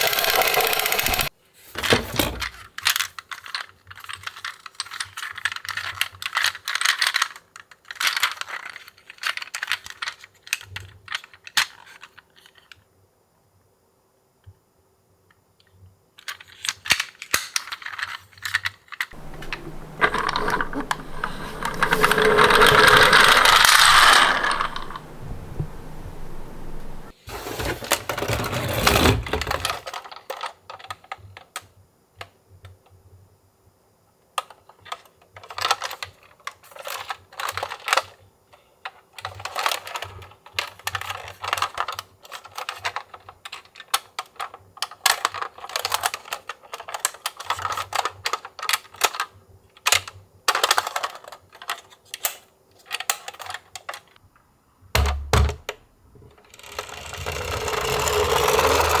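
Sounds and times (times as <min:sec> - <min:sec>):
plastic toy cars clicking: 0:00.0 - 0:01.3, 0:02.4 - 0:12.7, 0:16.2 - 0:27.2, 0:29.2 - 0:31.6, 0:38.8 - 0:54.2, 0:56.4 - 0:59.0.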